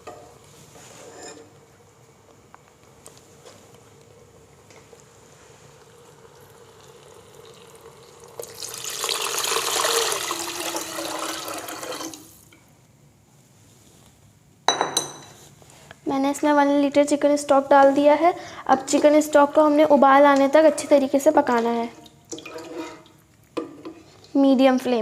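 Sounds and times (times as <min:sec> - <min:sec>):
liquid pouring into pot: 0:05.6 - 0:12.3, 0:21.9 - 0:23.2.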